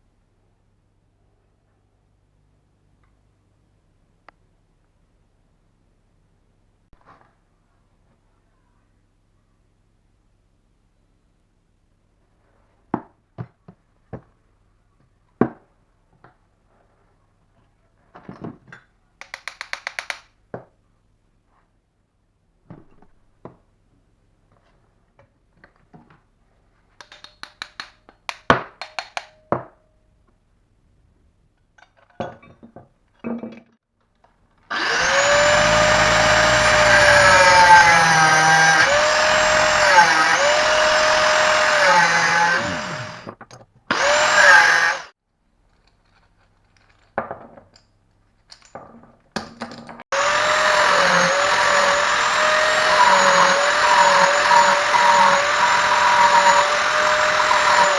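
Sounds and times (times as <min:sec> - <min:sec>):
power tool motor whining: 0:34.7 - 0:43.3, 0:43.9 - 0:45.1, 0:50.1 - 0:57.9.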